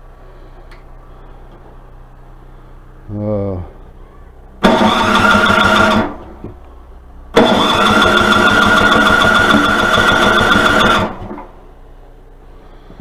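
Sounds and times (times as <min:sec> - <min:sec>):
electric starter cranking engine: 0:04.6 - 0:06.4, 0:07.3 - 0:11.5.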